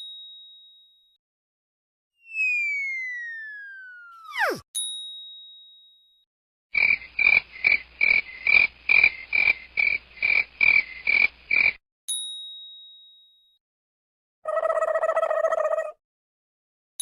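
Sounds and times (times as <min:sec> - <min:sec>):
bell-like ding: 0:04.8 - 0:06.2, 0:12.1 - 0:13.6.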